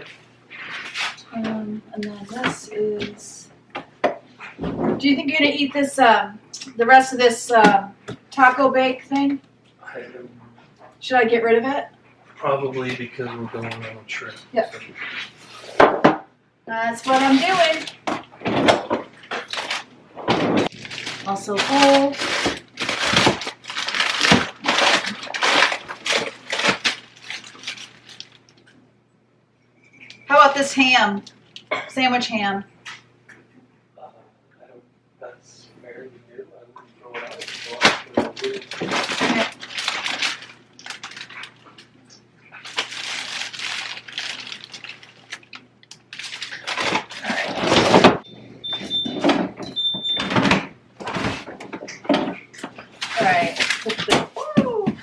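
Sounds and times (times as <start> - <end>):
plastic packaging crinkling and clattering: 17.0 - 28.7, 37.2 - 48.2, 50.2 - 55.0.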